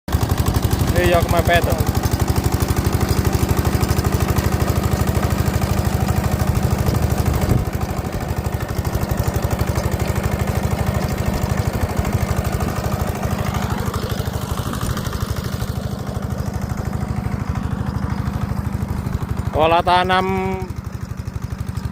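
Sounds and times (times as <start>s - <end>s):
diesel engine knocking: 0.1s - 21.9s.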